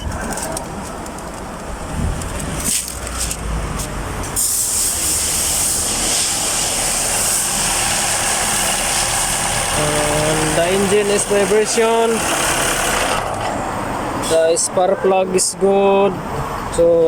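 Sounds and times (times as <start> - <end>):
steady hiss: 4.4 - 11.6
car engine idling roughly: 4.8 - 13.5.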